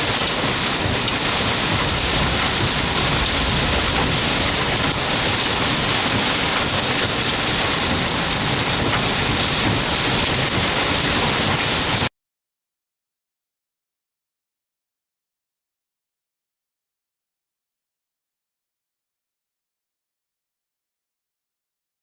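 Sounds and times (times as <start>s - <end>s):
heavy rain pouring: 0.0s - 12.1s.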